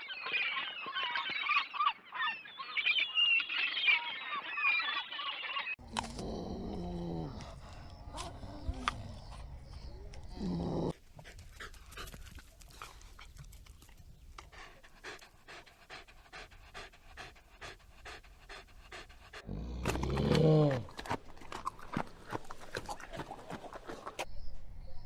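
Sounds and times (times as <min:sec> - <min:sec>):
dog panting: 0:10.9 - 0:19.6.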